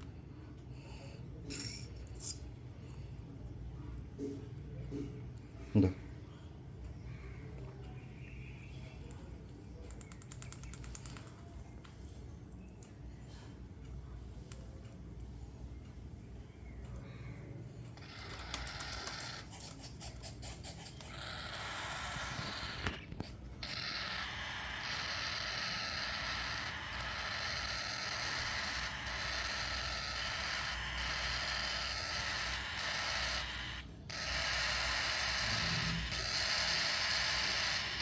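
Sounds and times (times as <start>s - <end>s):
rapid clicks: 9.8s - 11.4s
cockatiels chirping: 18.0s - 20.0s, 20.6s - 38.0s.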